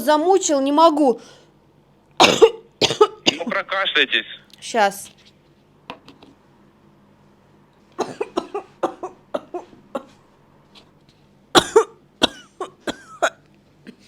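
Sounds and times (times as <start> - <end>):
woman coughing: 2.2 - 3.5, 8.0 - 10.2, 11.5 - 14.0.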